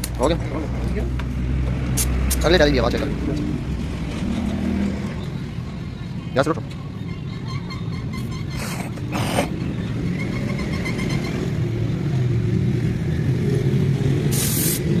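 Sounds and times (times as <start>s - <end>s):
hiss bursts: 14.3s - 14.9s.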